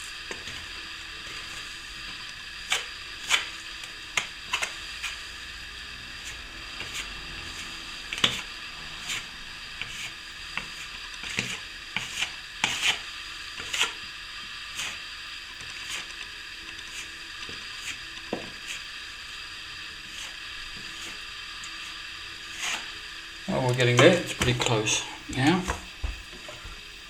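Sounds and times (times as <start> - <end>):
steady hiss: 0.0 - 27.0
trowel scraping wet plaster: 9.8 - 13.0, 13.6 - 14.0, 22.5 - 22.9.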